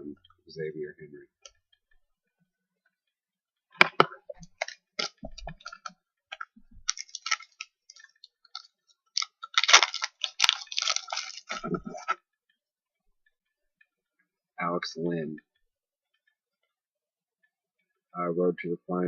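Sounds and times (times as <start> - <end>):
card packs rustling: 4.5 - 12.1.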